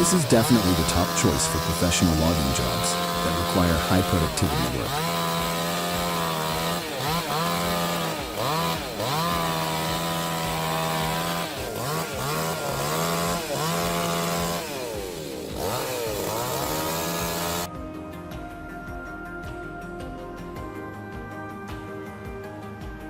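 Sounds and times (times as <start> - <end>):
chainsaw cutting a log: 0.0 - 17.7
music: 0.0 - 23.0.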